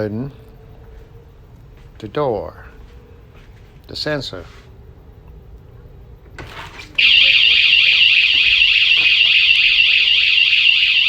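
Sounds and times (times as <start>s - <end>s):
electronic siren wailing: 7.0s - 11.0s.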